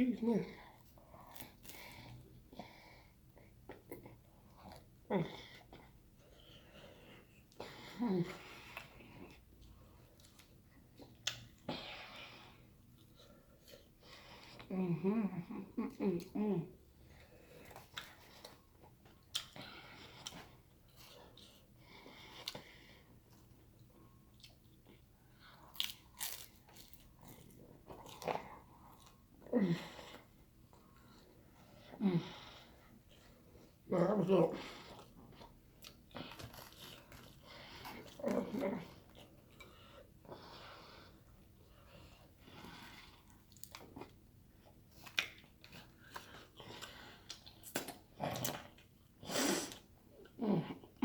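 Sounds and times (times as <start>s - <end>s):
chewing: 17.1s - 21.6s, 34.7s - 49.0s.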